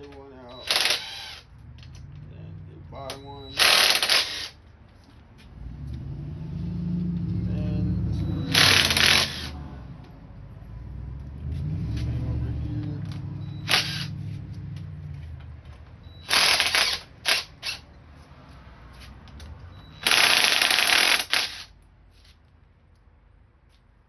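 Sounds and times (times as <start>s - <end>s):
impact wrench hammering: 0.0s - 1.4s, 3.1s - 4.6s, 8.4s - 9.6s, 13.0s - 14.1s, 16.2s - 17.9s, 19.9s - 21.7s.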